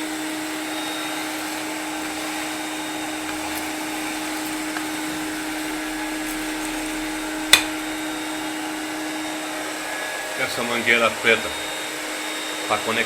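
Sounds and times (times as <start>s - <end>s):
vacuum cleaner running: 0.0s - 13.0s.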